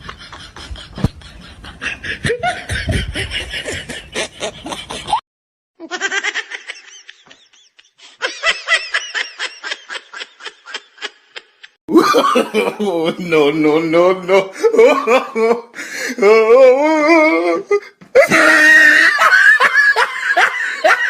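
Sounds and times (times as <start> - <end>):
people laughing: 0.0 - 5.2, 5.9 - 13.4, 18.2 - 21.0.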